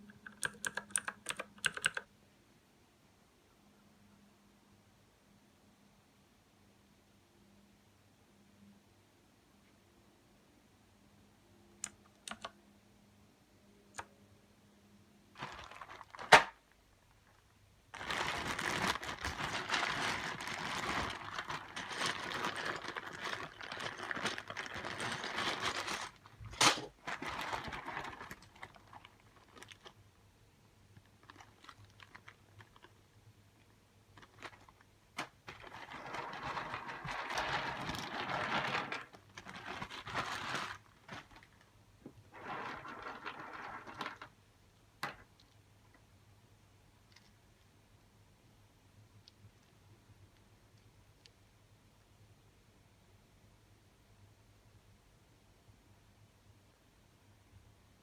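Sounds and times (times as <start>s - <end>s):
mechanical keyboard clicking: 0.2s - 2.1s, 11.8s - 12.6s.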